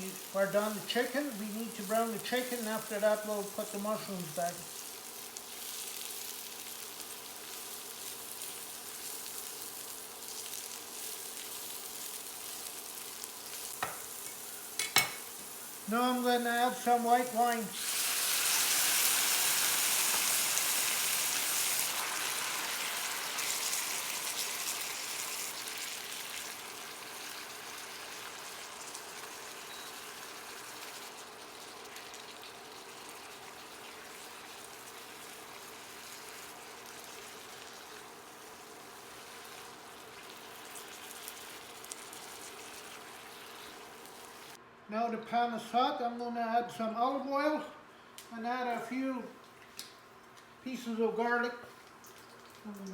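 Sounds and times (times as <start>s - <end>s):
wine sizzling in a hot pan: 0.0s - 44.6s, 50.8s - 52.9s.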